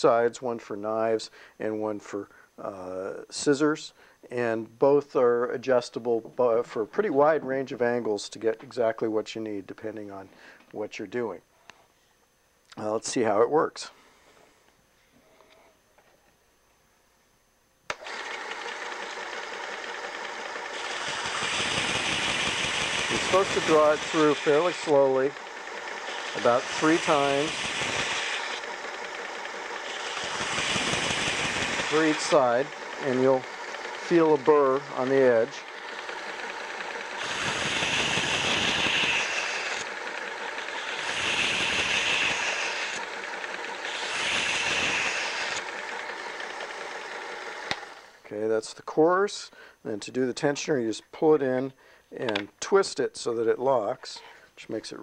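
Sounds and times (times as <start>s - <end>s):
belt sharpener motor running: 17.9s - 48.2s.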